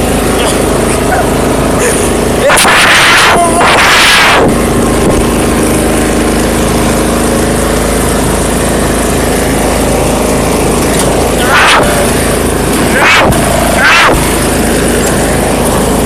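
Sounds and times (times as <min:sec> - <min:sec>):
lawn mower engine running: 0:00.0 - 0:16.0.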